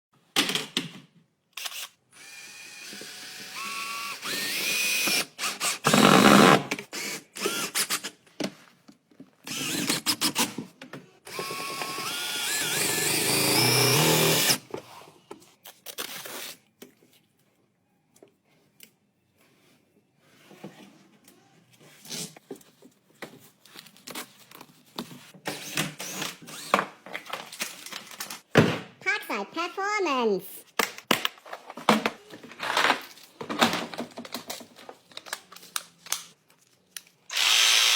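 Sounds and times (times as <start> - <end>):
power tool motor whining: 11.3 - 14.6, 37.3 - 37.9.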